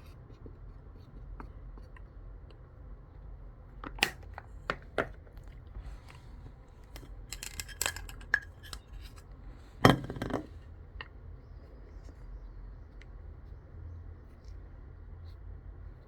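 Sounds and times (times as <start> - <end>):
low steady hum: 0.0 - 16.0
small objects clicking and clinking: 7.0 - 8.8.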